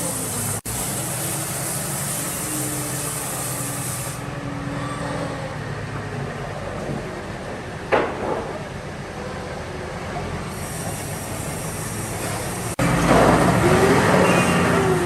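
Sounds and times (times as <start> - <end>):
sawmill machinery humming: 0.0 - 4.6, 10.0 - 15.0.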